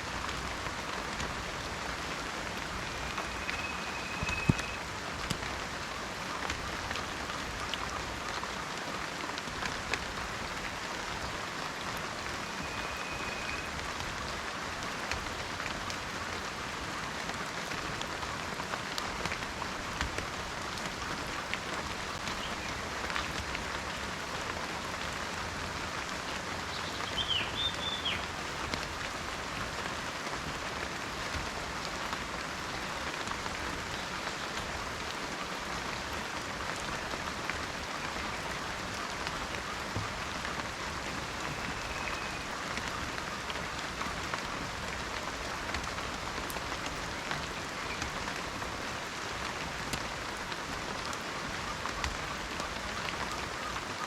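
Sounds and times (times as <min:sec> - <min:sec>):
rain falling in a forest: 0:00.0 - 0:54.0
thin whistle: 0:03.0 - 0:04.8, 0:12.4 - 0:13.7
bird chirping: 0:03.1 - 0:04.8.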